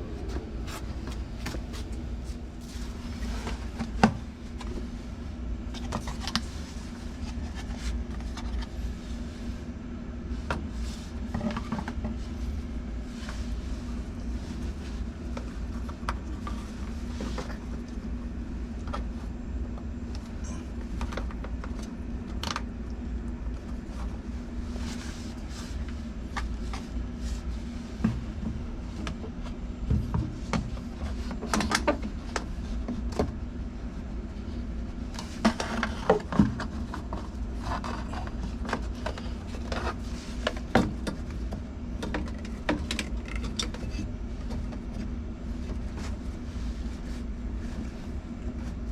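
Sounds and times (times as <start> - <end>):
steady low hum: 0.0 - 48.9
clicks and knocks of handling: 35.2 - 45.1.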